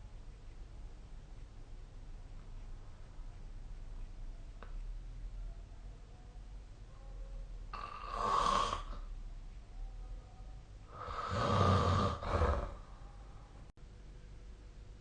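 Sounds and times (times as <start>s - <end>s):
person snoring: 7.7s - 9.1s, 10.9s - 12.9s.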